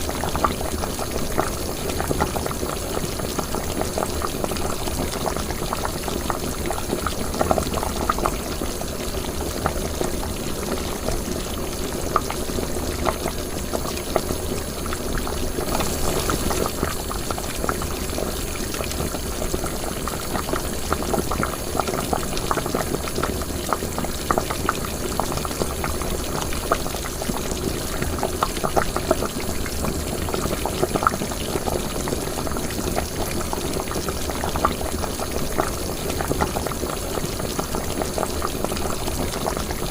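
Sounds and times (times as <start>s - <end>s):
liquid boiling in a pot: 0.0s - 39.9s.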